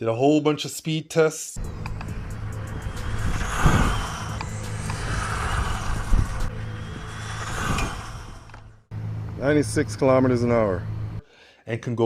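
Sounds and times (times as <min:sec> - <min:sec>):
rc car motor whine: 0:01.6 - 0:08.8.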